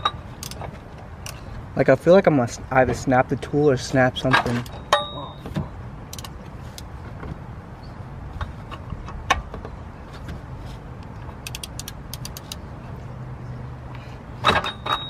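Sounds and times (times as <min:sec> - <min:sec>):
metal wrench clicks and knocks: 0:00.0 - 0:01.4, 0:06.1 - 0:06.9, 0:11.1 - 0:12.6.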